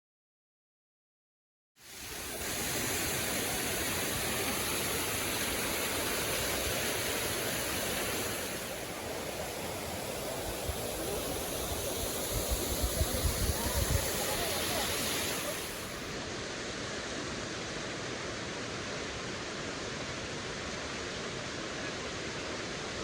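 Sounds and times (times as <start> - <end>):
waterfall rushing: 1.8 - 17.8.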